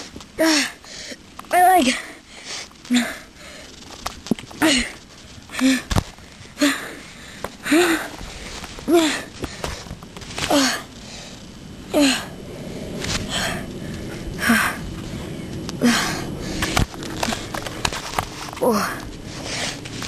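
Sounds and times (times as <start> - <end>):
person gasping and groaning: 4.6 - 6.0, 6.6 - 8.2, 8.9 - 9.6, 15.8 - 17.5.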